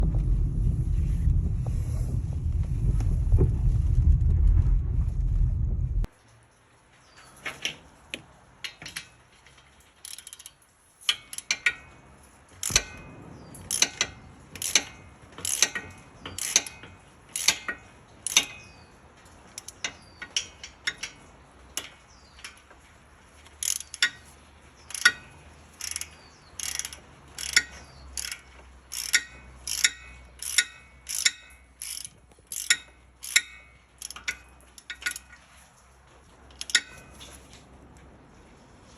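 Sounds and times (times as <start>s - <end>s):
metallic clicks from car brakes: 7.2s - 35.8s, 36.5s - 37.7s.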